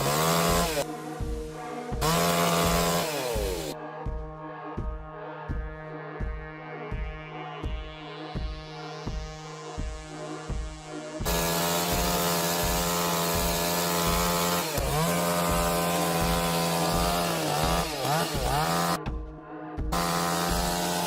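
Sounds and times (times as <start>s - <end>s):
chainsaw cutting wood: 0.0s - 3.8s, 9.1s - 19.1s, 19.9s - 21.0s.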